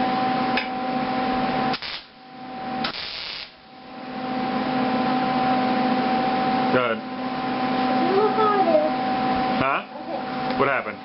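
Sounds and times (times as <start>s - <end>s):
welder arc hissing and crackling: 1.7s - 2.2s, 2.8s - 3.6s.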